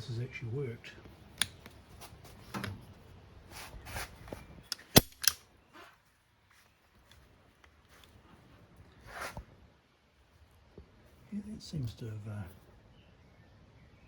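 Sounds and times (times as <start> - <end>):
strap buckle clicks: 4.7 - 5.4.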